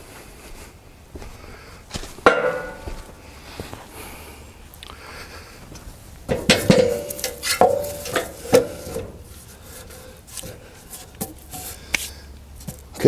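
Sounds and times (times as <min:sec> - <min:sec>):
metallic clanks and knocks: 0:02.2 - 0:03.1, 0:06.2 - 0:09.3.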